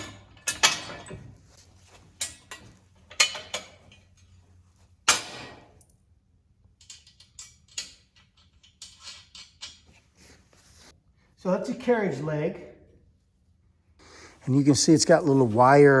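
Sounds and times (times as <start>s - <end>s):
metal parts clanking: 0.0s - 4.4s, 6.8s - 10.0s.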